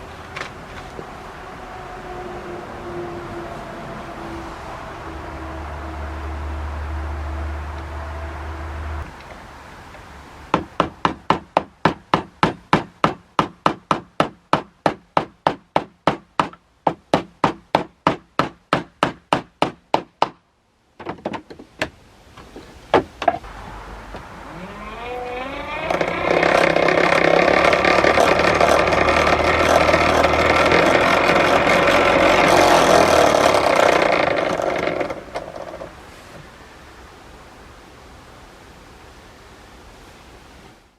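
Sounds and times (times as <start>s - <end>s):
sharp rhythmic knocks: 10.5s - 20.4s
grinder motor whining: 24.0s - 35.9s.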